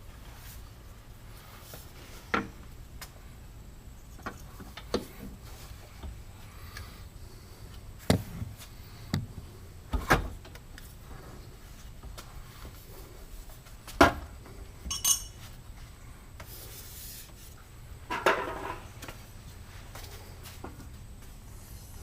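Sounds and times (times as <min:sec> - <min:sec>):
low steady hum: 0:00.0 - 0:22.0.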